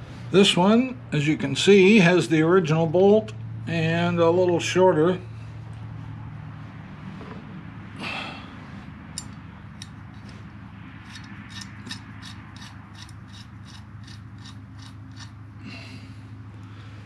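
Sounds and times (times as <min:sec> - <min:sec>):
ratchet wrench clicking: 0:09.2 - 0:10.4, 0:11.0 - 0:15.4
metal parts scraping: 0:11.0 - 0:15.4.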